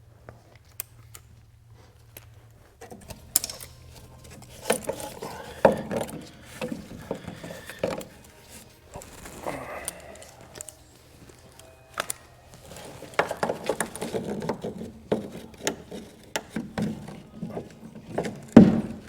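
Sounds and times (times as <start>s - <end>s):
scraping rattles: 1.8s - 19.0s
hand tools knocking on metal: 2.9s - 9.1s, 10.0s - 19.0s.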